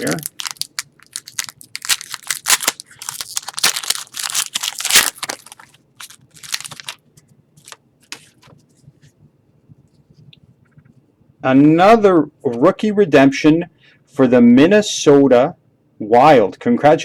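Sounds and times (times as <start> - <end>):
cards being handled: 0.0 - 7.0, 7.6 - 8.6
foil wrapper tearing and crinkling: 0.0 - 7.0.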